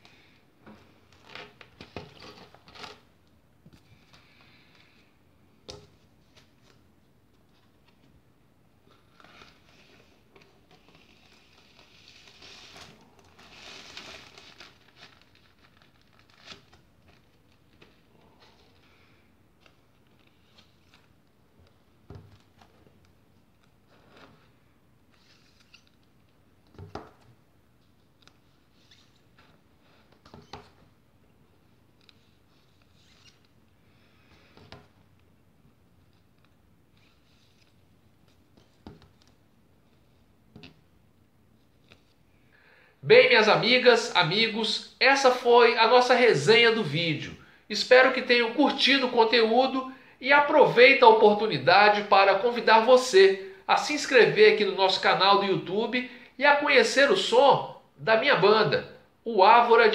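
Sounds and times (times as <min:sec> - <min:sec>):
plastic sleeves rustling: 0:00.0 - 0:05.1, 0:05.7 - 0:42.5
thin plastic crinkling: 0:09.0 - 0:18.1.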